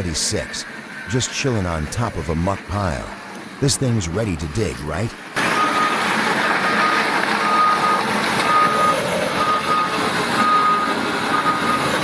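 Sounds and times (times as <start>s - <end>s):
heavy machinery running: 0.0s - 12.0s
backup alarm beeping: 5.5s - 6.0s, 6.7s - 12.0s.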